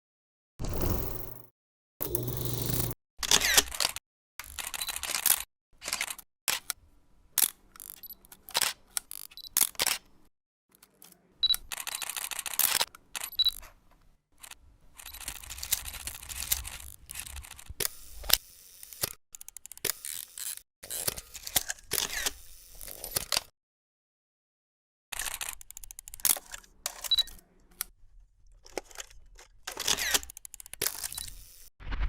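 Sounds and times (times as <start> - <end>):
film advance rattles: 14.4 - 23.4.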